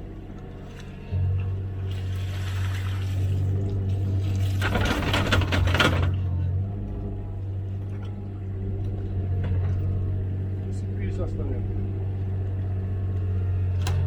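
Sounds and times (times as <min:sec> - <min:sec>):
excavator diesel engine running: 0:00.0 - 0:14.0
water splashing and pouring: 0:02.0 - 0:05.7.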